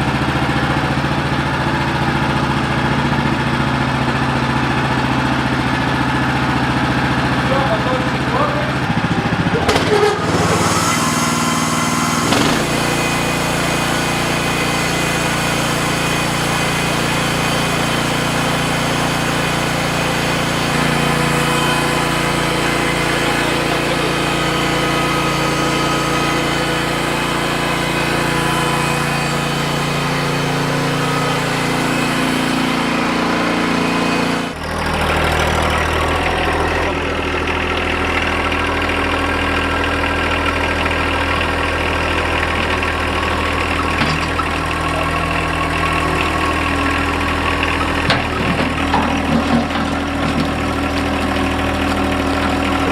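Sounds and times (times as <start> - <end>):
sawmill engine running: 0.0 - 52.9.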